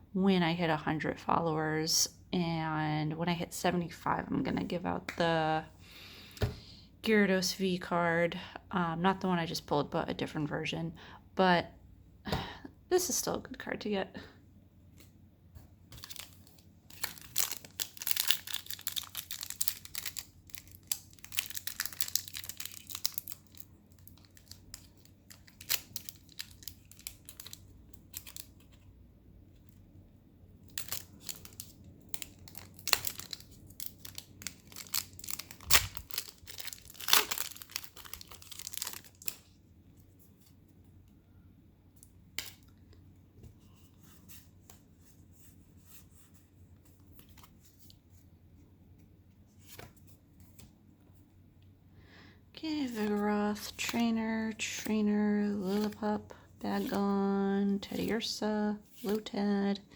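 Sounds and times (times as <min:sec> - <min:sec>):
foil wrapper crinkling and tearing: 0:15.9 - 0:28.6, 0:30.7 - 0:39.6.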